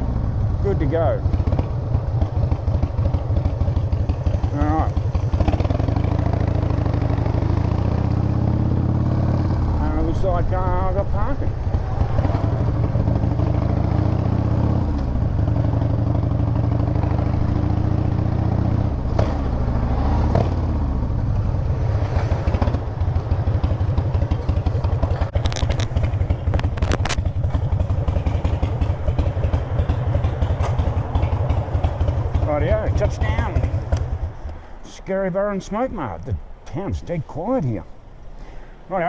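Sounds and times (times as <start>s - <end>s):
motorcycle engine idling: 0.0s - 7.7s, 22.4s - 34.5s
sharp clicks: 25.3s - 27.3s.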